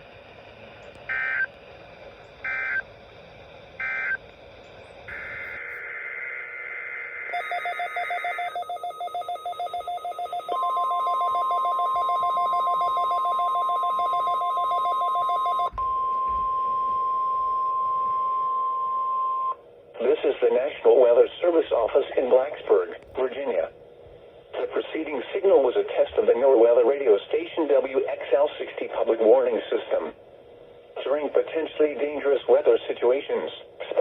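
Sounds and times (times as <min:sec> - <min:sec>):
rapidly pulsing electronic beeping: 0:01.1 - 0:01.5, 0:02.4 - 0:02.9, 0:03.8 - 0:04.2, 0:05.0 - 0:15.0
steady single-pitch alarm tone: 0:01.1 - 0:01.6, 0:02.4 - 0:02.9, 0:03.8 - 0:04.2, 0:05.1 - 0:19.6
screechy digital data bursts: 0:05.1 - 0:06.2.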